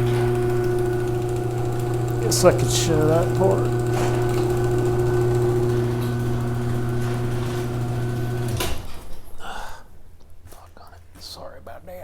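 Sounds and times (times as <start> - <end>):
garage door opener motor running: 0.0 - 9.3
garage door clunk: 0.0 - 9.4.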